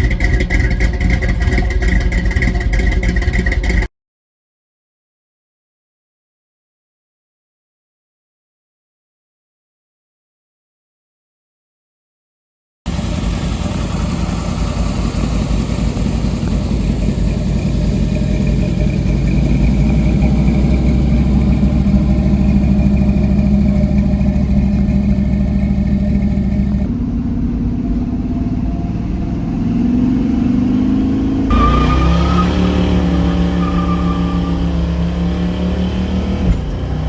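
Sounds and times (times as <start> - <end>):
car engine running and revving: 0.0 - 3.9, 12.9 - 37.0.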